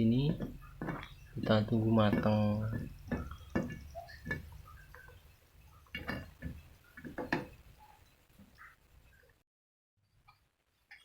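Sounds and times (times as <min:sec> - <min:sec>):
utensil clinking against a pot: 0:00.2 - 0:05.2, 0:05.8 - 0:07.6.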